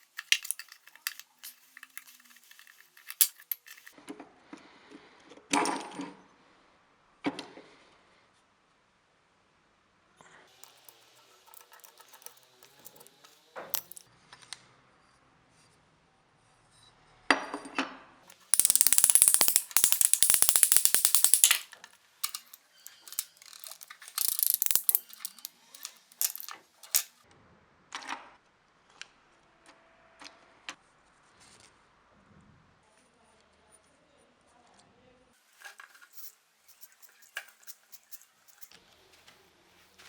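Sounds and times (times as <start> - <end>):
metal tools clicking and knocking: 0.0 - 3.9, 10.6 - 14.0, 18.3 - 27.1, 36.1 - 38.8.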